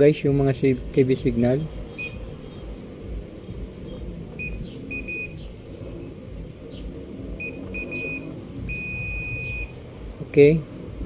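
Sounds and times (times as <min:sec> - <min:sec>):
low steady hum: 0:00.0 - 0:11.0
short high-pitched electronic beeps: 0:04.4 - 0:05.4, 0:07.4 - 0:09.7.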